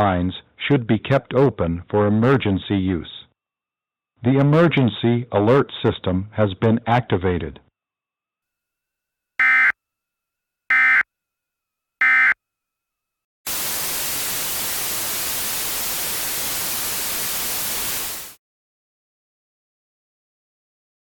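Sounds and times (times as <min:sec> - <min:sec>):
white noise static hiss: 0:13.5 - 0:18.4.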